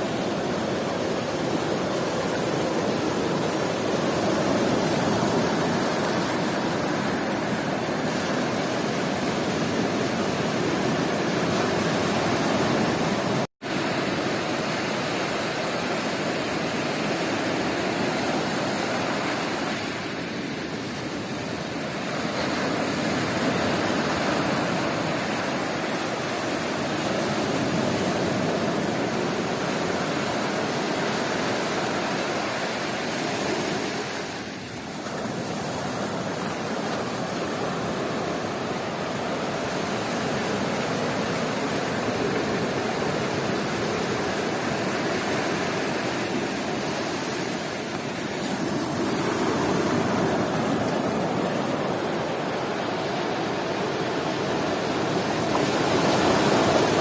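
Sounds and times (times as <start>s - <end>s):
sea surf washing onto beach: 0.0s - 57.0s.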